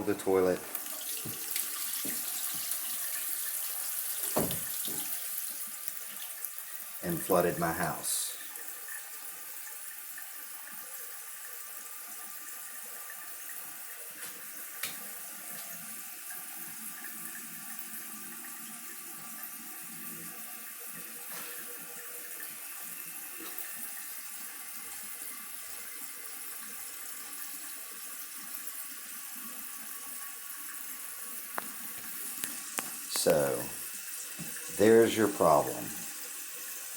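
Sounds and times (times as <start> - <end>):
water running: 0.0 - 36.9.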